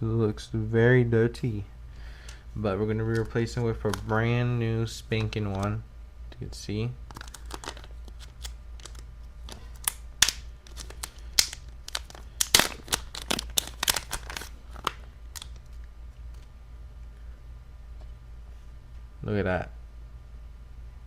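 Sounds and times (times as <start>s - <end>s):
plastic packaging crinkling: 3.0s - 4.3s, 7.1s - 16.5s
sharp clicks and crackles: 7.1s - 16.5s.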